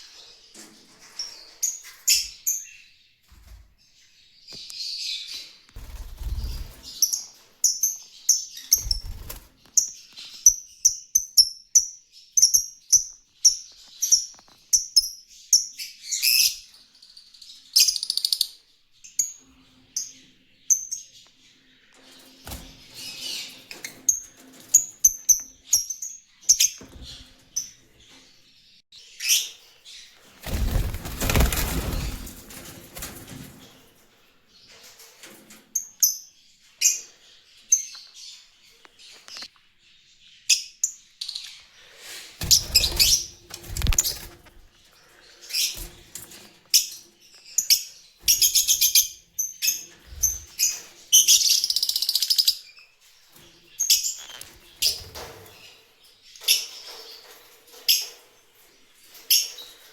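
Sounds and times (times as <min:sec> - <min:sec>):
lovebirds chirping: 0:00.0 - 0:59.9
wings flapping: 0:05.8 - 0:07.0, 0:08.8 - 0:09.7, 0:30.2 - 0:33.9, 0:42.4 - 0:44.7.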